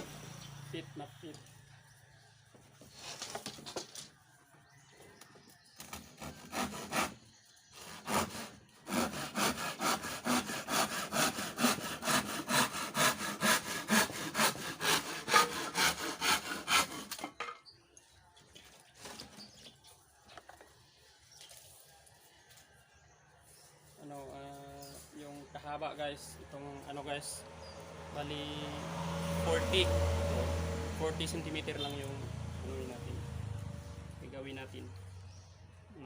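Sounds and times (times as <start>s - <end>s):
hand saw cutting wood: 5.8s - 17.4s.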